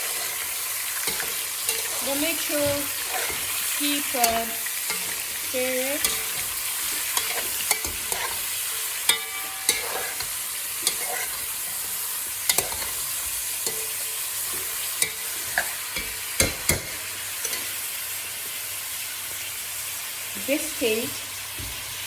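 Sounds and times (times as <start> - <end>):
frying in oil sizzling: 0.0 - 22.0
utensil knocking against pan: 16.0 - 17.0.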